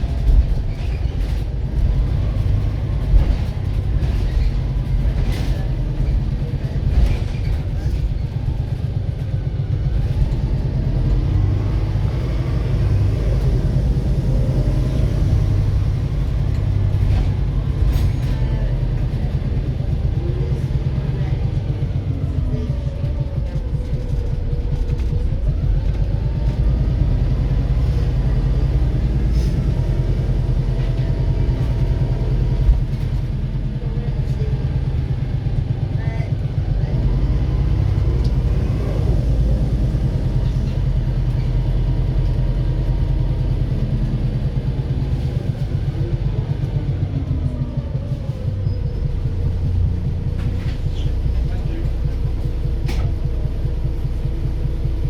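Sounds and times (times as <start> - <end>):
bus diesel engine rumbling: 0.0 - 55.0.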